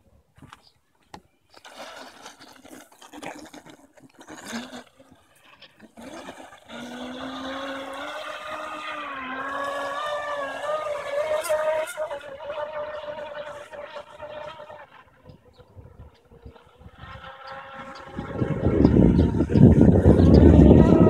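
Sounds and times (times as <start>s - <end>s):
water splashing and hiss: 1.6s - 14.8s
electric motor whine: 5.8s - 21.0s.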